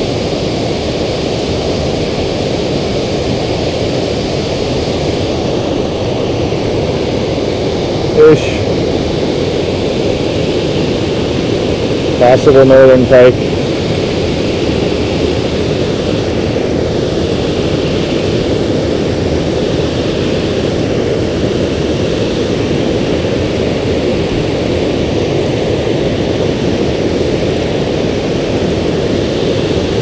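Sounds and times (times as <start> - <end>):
water rushing over spillway: 0.0 - 30.0.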